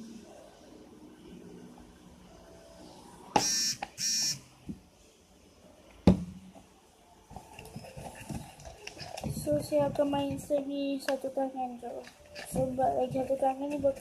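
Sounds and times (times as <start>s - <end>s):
electronic buzzer beeps: 3.4s - 4.5s.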